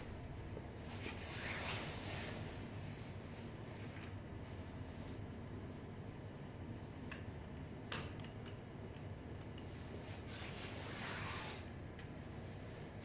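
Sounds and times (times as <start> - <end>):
short rubbing scrape: 10.1 - 11.7.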